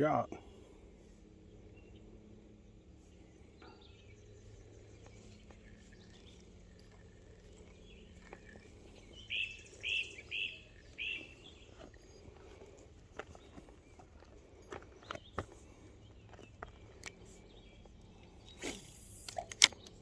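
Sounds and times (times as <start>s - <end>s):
bird calling sharp notes: 9.2s - 11.6s.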